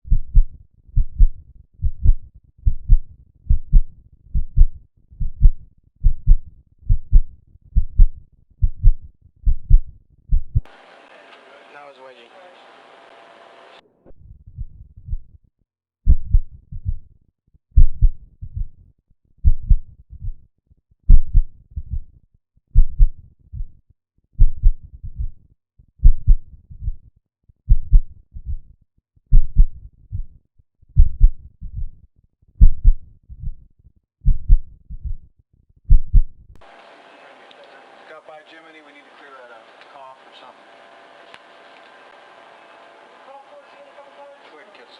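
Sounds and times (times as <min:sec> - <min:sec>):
heart beating: 0:00.0 - 0:10.7, 0:14.5 - 0:15.3, 0:16.1 - 0:17.0, 0:17.8 - 0:18.8, 0:19.4 - 0:20.4, 0:21.1 - 0:22.1, 0:22.8 - 0:23.8, 0:24.4 - 0:25.4, 0:26.0 - 0:27.0, 0:27.7 - 0:28.6, 0:29.3 - 0:30.4, 0:31.0 - 0:31.9, 0:32.6 - 0:33.6, 0:34.2 - 0:35.3, 0:35.9 - 0:36.4.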